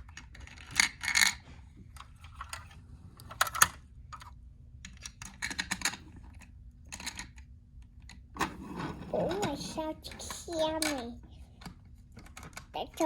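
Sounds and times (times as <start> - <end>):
plastic toys clicking: 4.9 - 7.4, 9.3 - 13.0.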